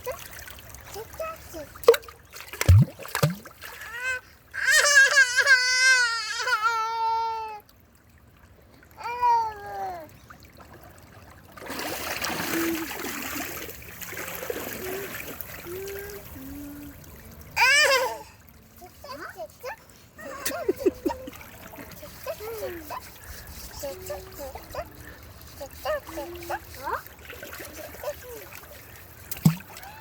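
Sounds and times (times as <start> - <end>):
water trickling and splashing: 0.0 - 30.0
young child crying: 3.7 - 7.7, 9.0 - 10.1, 14.8 - 17.0, 17.6 - 18.4, 20.2 - 21.4, 22.0 - 27.0, 29.6 - 30.0.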